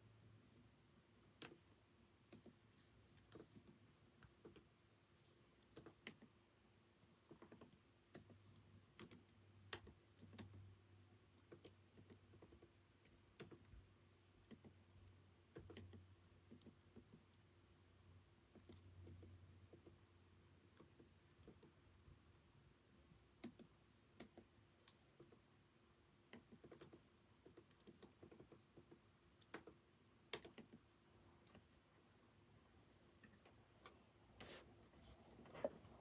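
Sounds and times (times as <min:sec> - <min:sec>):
keyboard typing: 0:03.2 - 0:04.7, 0:05.6 - 0:06.3, 0:07.3 - 0:10.6, 0:11.4 - 0:13.7, 0:15.5 - 0:17.2, 0:26.3 - 0:31.7.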